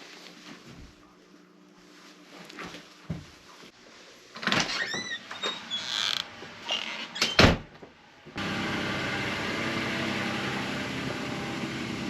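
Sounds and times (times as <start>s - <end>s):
creaks and squeaks of getting in: 4.4s - 7.6s
engine and fan humming: 7.9s - 12.0s.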